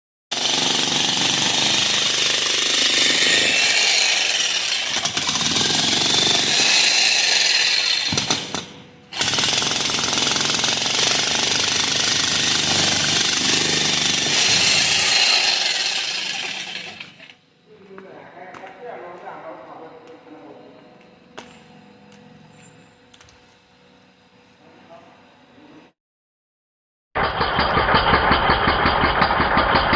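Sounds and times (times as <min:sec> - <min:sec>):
demolition hammer hammering: 0:07.4 - 0:16.7.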